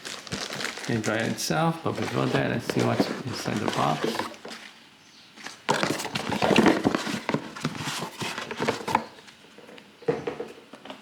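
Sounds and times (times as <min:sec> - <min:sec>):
cardboard box handled and opened: 0:00.1 - 0:04.6, 0:05.7 - 0:09.2.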